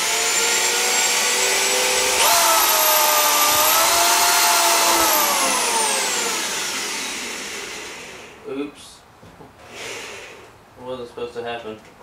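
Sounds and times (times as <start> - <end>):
electric drill boring: 0.0 - 8.4.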